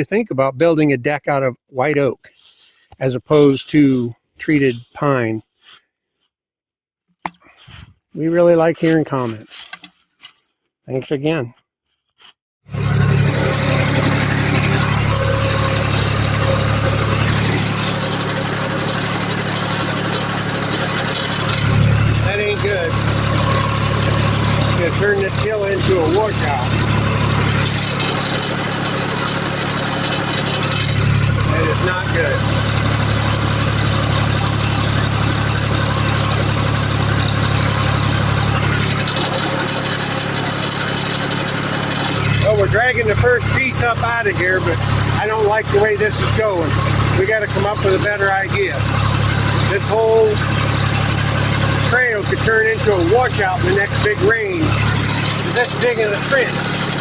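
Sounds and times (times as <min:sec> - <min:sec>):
tractor engine under load: 0:07.3 - 0:09.9, 0:12.7 - 0:57.0.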